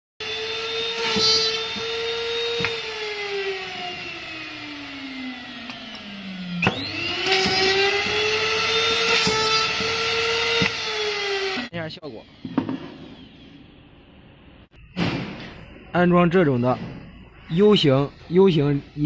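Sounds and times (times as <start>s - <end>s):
drilling machine motor whining: 0.2s - 11.7s.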